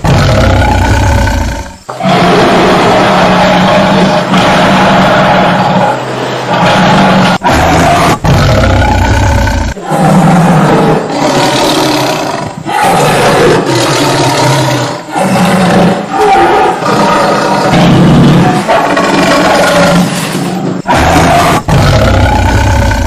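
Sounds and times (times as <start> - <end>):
tiger roaring: 0.0 - 23.0.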